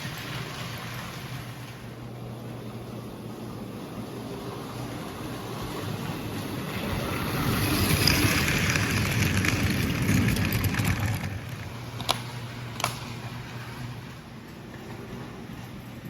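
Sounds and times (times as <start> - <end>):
toy train rolling on track: 5.8 - 12.1.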